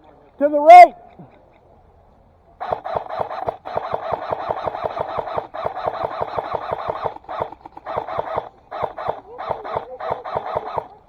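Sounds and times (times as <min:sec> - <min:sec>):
airsoft gun full-auto bursts: 0:02.6 - 0:11.0.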